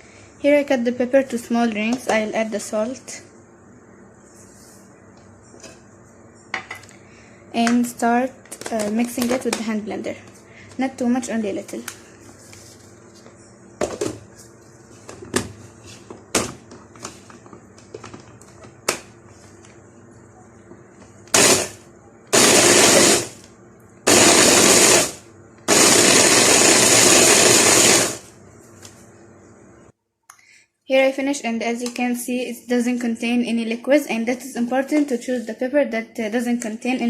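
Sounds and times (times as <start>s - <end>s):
hand blender whirring: 21.3s - 21.8s, 22.4s - 23.4s, 24.1s - 28.3s.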